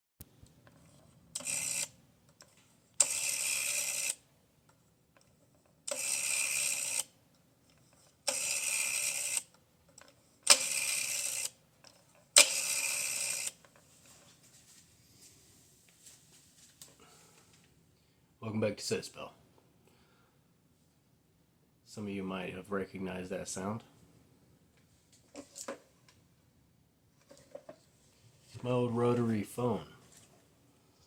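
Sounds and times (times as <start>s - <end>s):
rotary telephone dial whirring: 0.6s - 4.3s, 5.2s - 13.8s.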